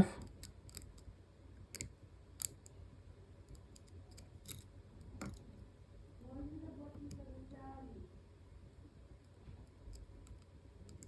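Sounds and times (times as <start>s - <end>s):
faint lock picking clicks: 3.4s - 5.5s.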